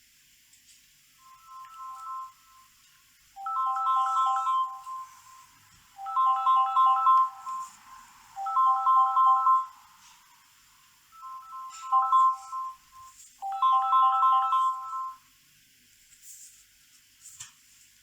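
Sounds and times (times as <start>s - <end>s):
smartphone ringtone: 1.2s - 10.3s, 11.2s - 15.3s.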